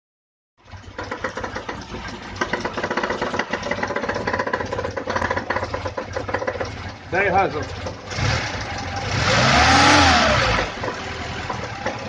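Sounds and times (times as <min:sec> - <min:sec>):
car engine idling: 0:00.6 - 0:12.0
fast knocking: 0:02.4 - 0:06.8.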